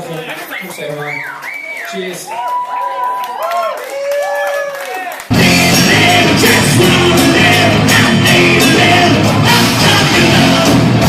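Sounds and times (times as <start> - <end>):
live rock band playing: 5.3 - 11.0
person singing: 5.3 - 11.0.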